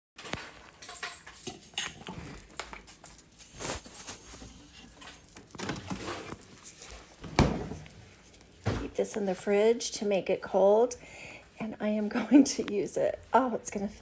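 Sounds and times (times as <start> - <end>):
objects clicking and rustling: 0.2 - 9.1.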